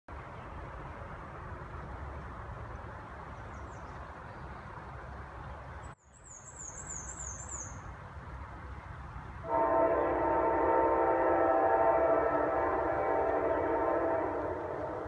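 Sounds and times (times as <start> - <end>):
outdoor background noise: 0.1 - 15.0
bird chirping: 3.3 - 7.9
locomotive air horn: 9.4 - 15.0.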